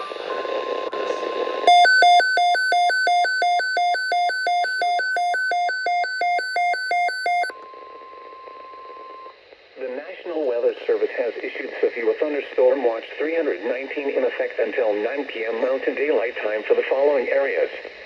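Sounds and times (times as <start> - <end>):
radio static: 0.0 - 1.8, 7.8 - 18.0
alternating electronic alarm beeps: 1.5 - 9.4.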